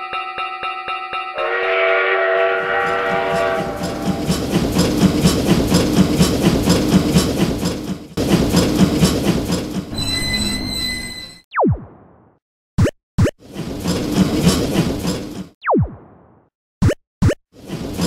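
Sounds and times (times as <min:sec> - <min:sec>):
train horn: 0:01.4 - 0:04.2
train wheels clacking over rail joints: 0:02.6 - 0:10.0, 0:13.5 - 0:15.6.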